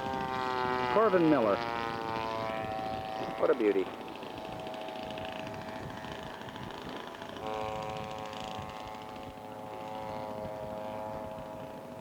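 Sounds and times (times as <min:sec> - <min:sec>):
model airplane engine: 0:00.0 - 0:12.0.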